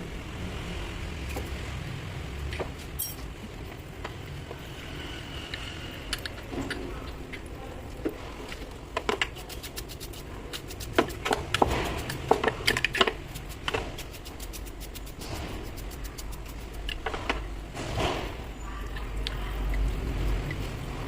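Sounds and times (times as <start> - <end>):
hand tools clicking and tapping: 8.5 - 17.5
steady low rumble: 9.6 - 21.0.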